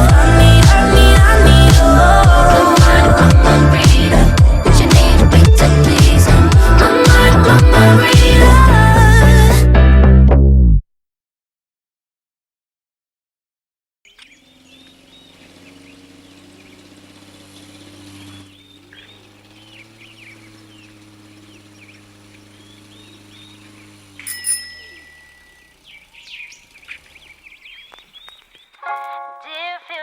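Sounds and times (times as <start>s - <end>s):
low steady hum: 0.0s - 9.2s, 14.2s - 28.0s
birds chirping: 14.1s - 30.0s
brief held tone: 24.2s - 25.8s.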